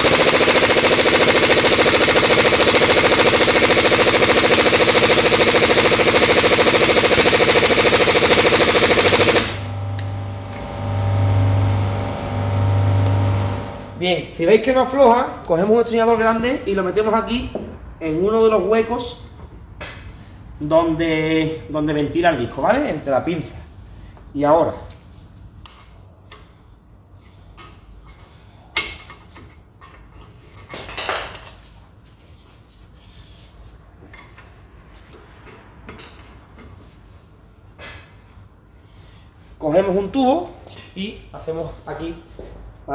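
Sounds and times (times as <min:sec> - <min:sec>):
metallic rattling clatter: 0:00.0 - 0:09.6
impact wrench hammering: 0:00.0 - 0:09.7.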